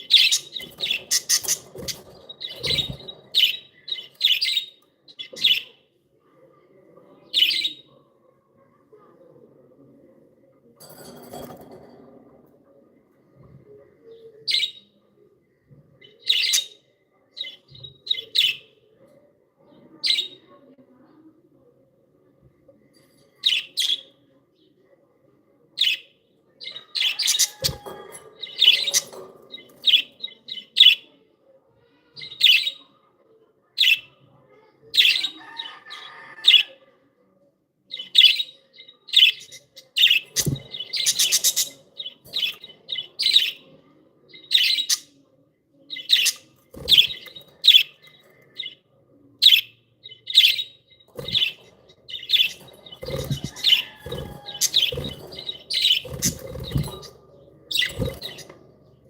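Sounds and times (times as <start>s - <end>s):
budgerigars chirping: 0.2s - 3.0s, 40.0s - 41.8s, 49.5s - 57.0s.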